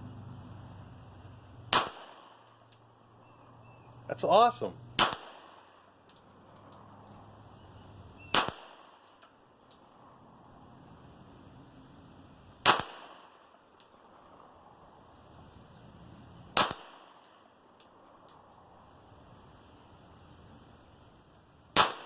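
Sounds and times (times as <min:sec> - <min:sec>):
carbine gunshots with echo: 0:01.7 - 0:02.5, 0:05.0 - 0:05.7, 0:08.3 - 0:09.1, 0:12.6 - 0:13.3, 0:16.5 - 0:17.3, 0:21.8 - 0:22.0.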